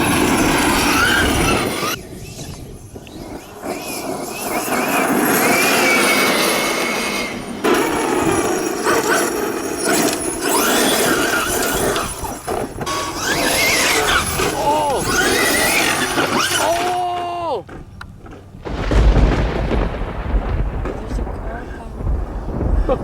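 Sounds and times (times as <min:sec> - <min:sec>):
electric motor and drivetrain whine: 0:00.0 - 0:20.0
tyre noise: 0:00.0 - 0:20.2.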